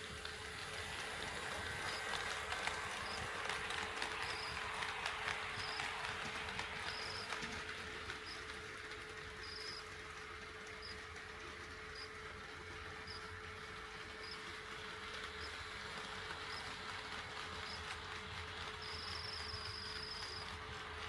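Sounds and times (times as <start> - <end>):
model train running on track: 0.0 - 21.0.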